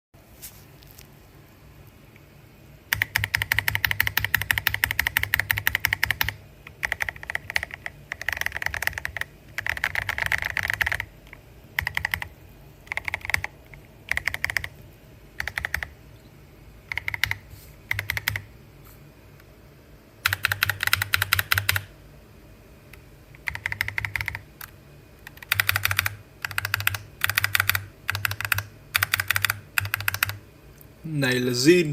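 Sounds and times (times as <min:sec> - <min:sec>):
mechanical keyboard typing: 0:02.9 - 0:16.0, 0:16.9 - 0:18.5, 0:20.2 - 0:21.9, 0:22.9 - 0:30.4.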